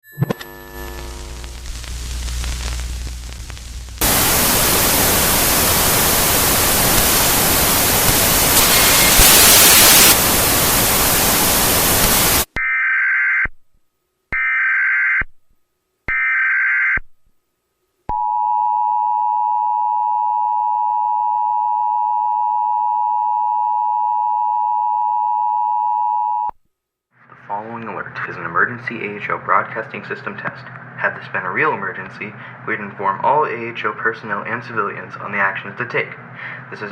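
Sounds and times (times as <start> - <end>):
loud static burst: 0.7 - 12.5
screeching data bursts: 6.5 - 12.4.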